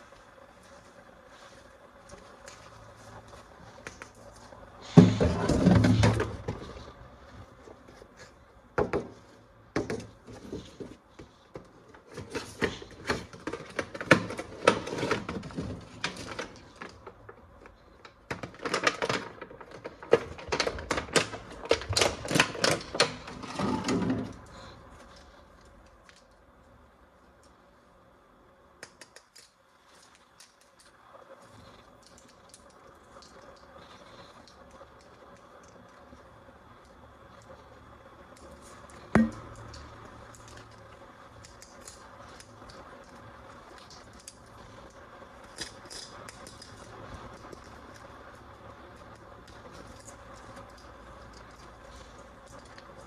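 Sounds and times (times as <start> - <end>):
plastic toys clicking and clattering: 9.8 - 26.4, 28.8 - 37.6, 38.3 - 53.0.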